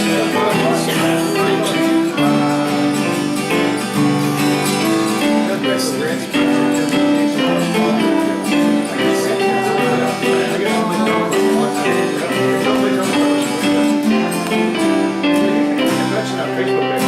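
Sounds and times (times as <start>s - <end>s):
band playing instrumental: 0.0s - 17.0s.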